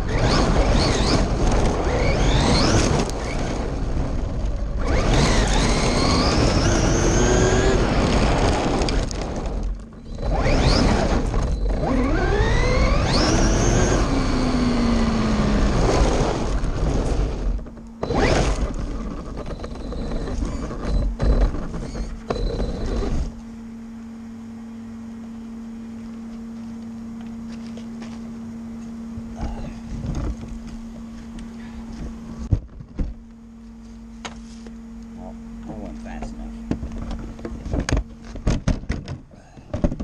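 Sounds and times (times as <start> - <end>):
rc car motor whining: 0.0 - 23.3
tyres on gravel: 0.0 - 23.6.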